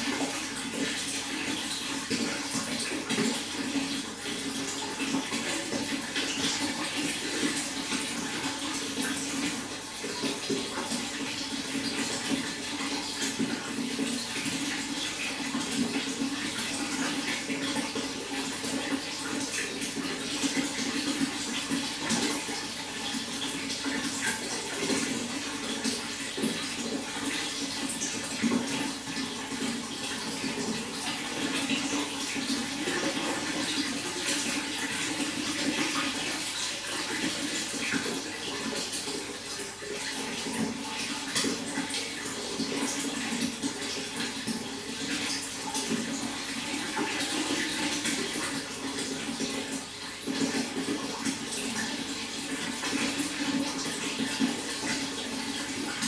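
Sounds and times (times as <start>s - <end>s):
running water splashing: 0.0s - 56.0s.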